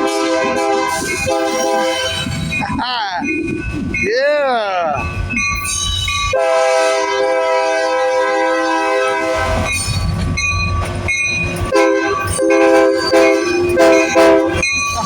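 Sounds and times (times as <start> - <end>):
locomotive air horn blasts: 0.0 - 2.0, 6.3 - 9.6, 11.7 - 14.7
low rumble of passing train: 0.0 - 4.1, 4.7 - 15.0.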